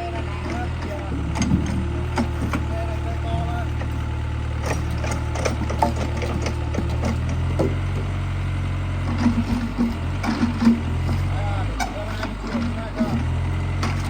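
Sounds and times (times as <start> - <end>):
excavator diesel engine running: 0.0 - 14.0
knocks and clatter: 0.0 - 14.0.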